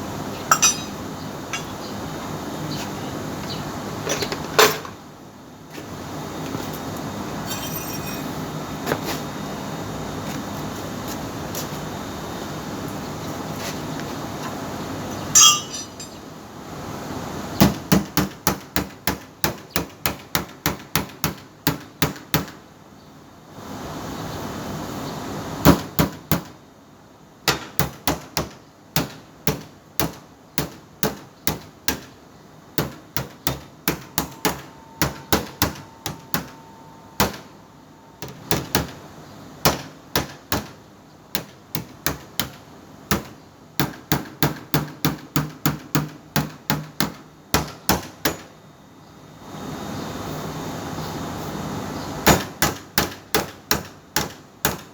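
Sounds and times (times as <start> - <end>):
loud ringing hammer hit: 15.4 - 16.2.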